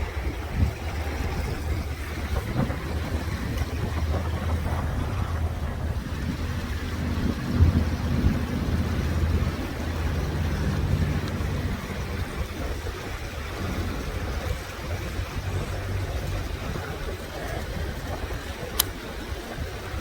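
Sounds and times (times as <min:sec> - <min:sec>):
low rumble: 0:00.0 - 0:18.6
river water rushing: 0:00.0 - 0:20.0.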